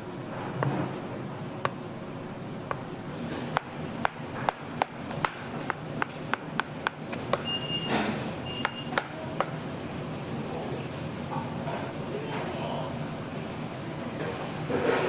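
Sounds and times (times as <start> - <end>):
steady background noise: 0.0 - 15.0
short high beeps: 7.4 - 9.0.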